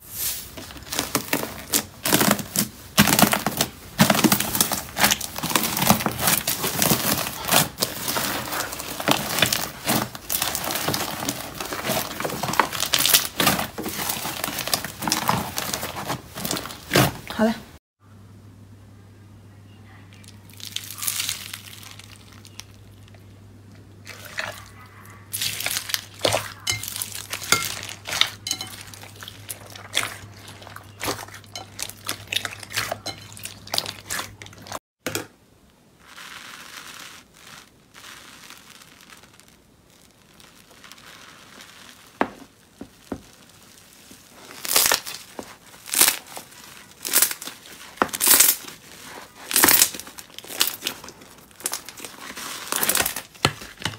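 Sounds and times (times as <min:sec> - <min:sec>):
slime crackling and popping: 0:00.6 - 0:17.2, 0:20.5 - 0:23.2, 0:25.3 - 0:34.6, 0:36.0 - 0:53.9.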